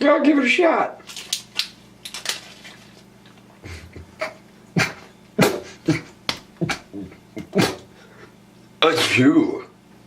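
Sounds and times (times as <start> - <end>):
person coughing: 4.2 - 7.9.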